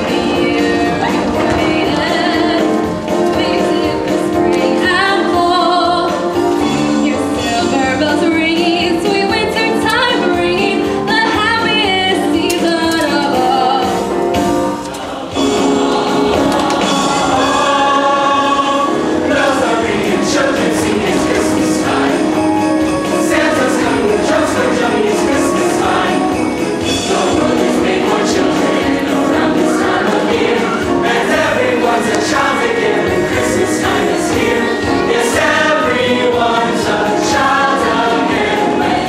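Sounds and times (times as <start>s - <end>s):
choir singing: 0.0s - 6.3s, 14.6s - 39.0s
musical accompaniment: 0.0s - 39.0s.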